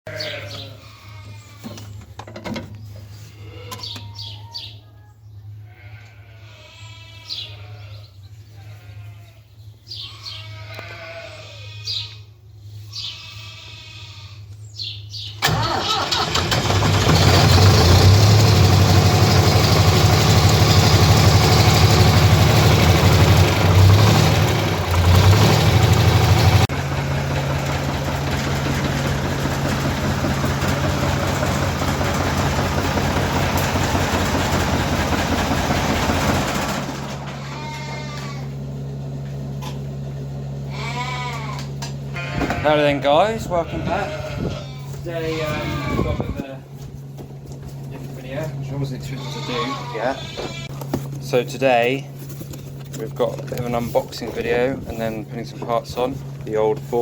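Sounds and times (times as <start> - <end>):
tractor engine idling and revving: 15.4 - 40.9.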